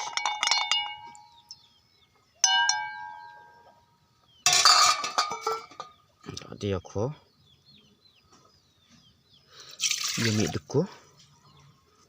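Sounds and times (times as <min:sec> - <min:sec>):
metal kitchenware clinking: 0:00.0 - 0:01.4, 0:04.4 - 0:06.0
sharp ringing metal strikes: 0:02.4 - 0:03.7.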